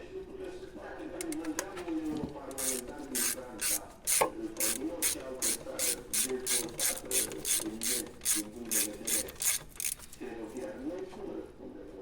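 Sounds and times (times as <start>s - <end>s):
ratchet wrench clicking: 2.5s - 10.2s.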